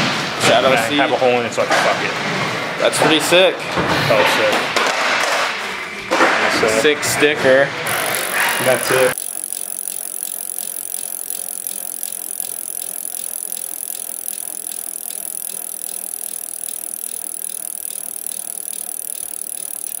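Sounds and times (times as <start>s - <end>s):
bike hub ticking: 7.9s - 20.0s.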